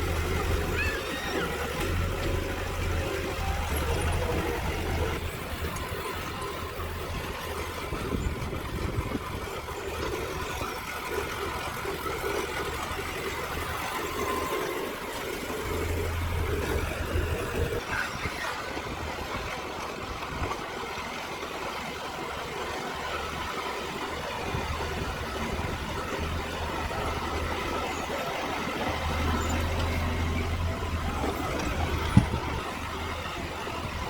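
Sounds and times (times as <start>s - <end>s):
heavy diesel engine droning: 0.0s - 34.0s.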